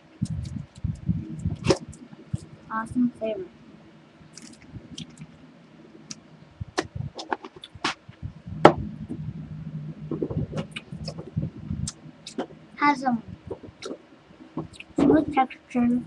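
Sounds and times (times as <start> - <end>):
low hum: 0.0 - 16.0.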